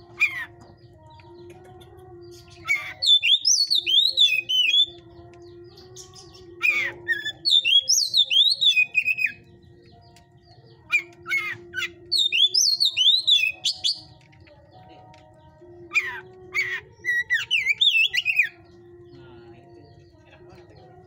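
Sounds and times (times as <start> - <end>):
bird singing whistled phrases: 2.6 - 5.0, 6.0 - 9.4, 10.9 - 14.1, 16.0 - 18.6.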